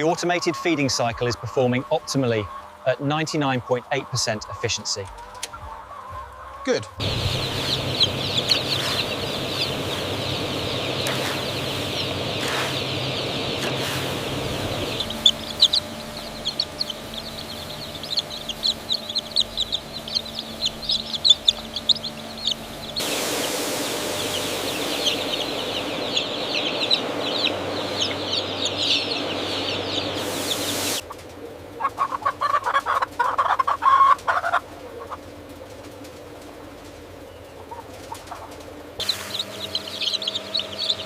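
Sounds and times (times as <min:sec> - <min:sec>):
chicken clucking: 0:00.0 - 0:23.5, 0:24.2 - 0:36.1, 0:37.5 - 0:41.0
chicks peeping: 0:00.0 - 0:41.0
steady hiss: 0:07.0 - 0:31.0, 0:39.0 - 0:41.0.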